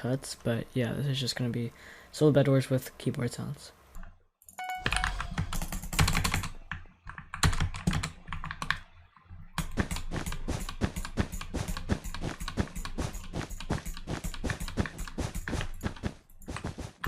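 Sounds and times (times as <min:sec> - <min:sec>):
mechanical keyboard typing: 0:04.6 - 0:08.8, 0:09.6 - 0:16.6.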